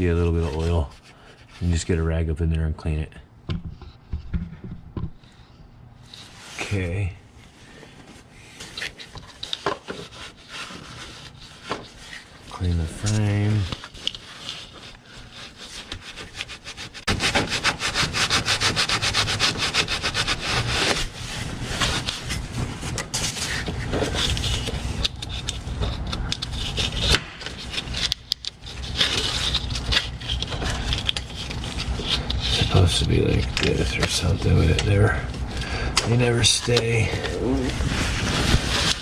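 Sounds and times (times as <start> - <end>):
rag rubbing on metal frame: 8.6 - 33.5.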